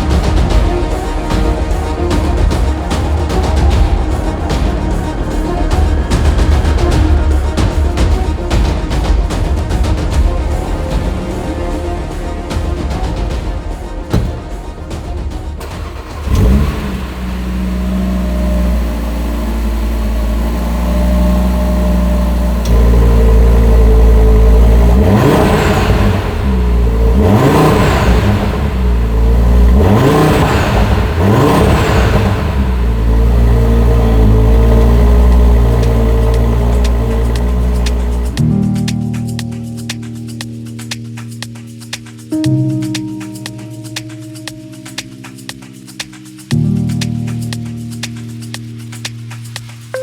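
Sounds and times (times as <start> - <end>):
engine revving: 0.0 - 38.4
car engine starting and idling: 0.0 - 38.9.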